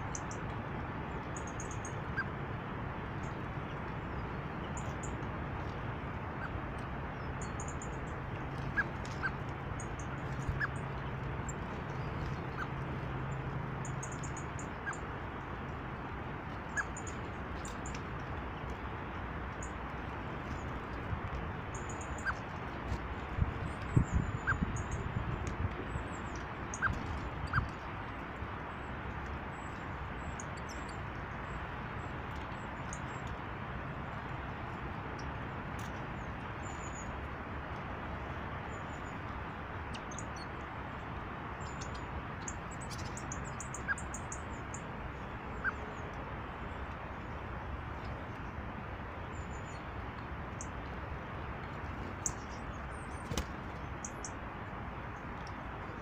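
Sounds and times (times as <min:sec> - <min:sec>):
small birds chirping: 0:16.6 - 0:18.1, 0:21.6 - 0:22.5, 0:25.8 - 0:27.8, 0:41.5 - 0:46.0, 0:52.0 - 0:54.4.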